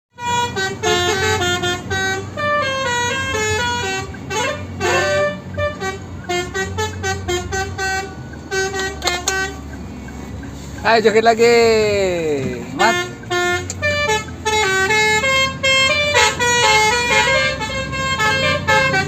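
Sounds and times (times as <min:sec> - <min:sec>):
musical bus horn melody: 0:00.1 - 0:10.8, 0:12.4 - 0:19.0.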